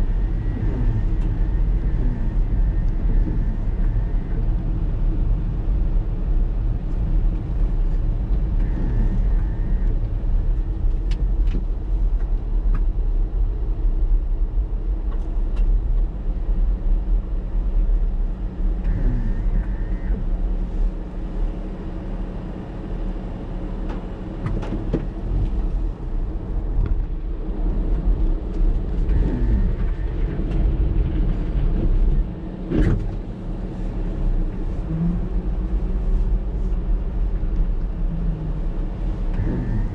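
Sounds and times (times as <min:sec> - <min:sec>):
heavy surf rumble: 0:00.0 - 0:15.0, 0:16.4 - 0:39.9
strong wind: 0:00.0 - 0:39.9
wind buffeting microphone: 0:24.3 - 0:39.9.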